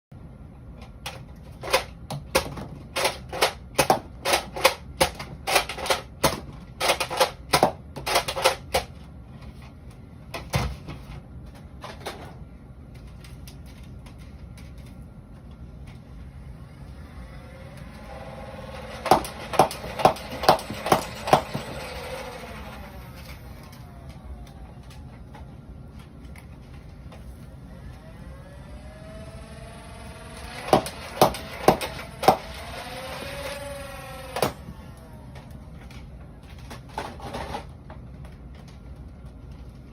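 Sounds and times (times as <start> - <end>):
blaster motor whirring: 28.1 - 35.1.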